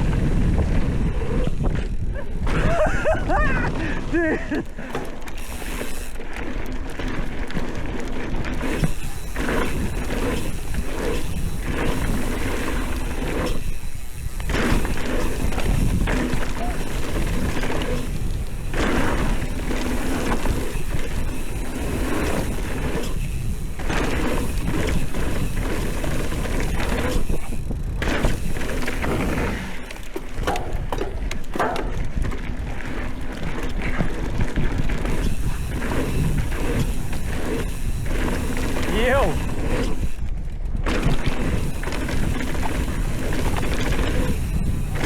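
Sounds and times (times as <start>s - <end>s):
wind buffeting microphone: 0.0s - 6.1s, 6.8s - 45.0s
bike knocking and rattling: 0.0s - 45.0s.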